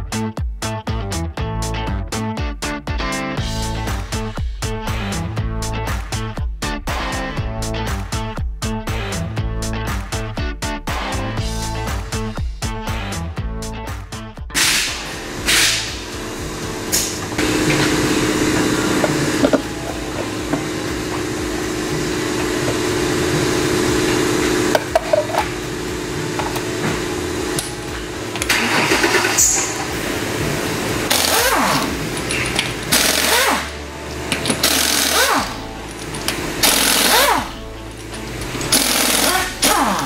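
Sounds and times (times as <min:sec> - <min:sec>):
pneumatic impact wrench rattling: 0:14.6 - 0:40.0
steady mechanical hum: 0:14.6 - 0:40.0.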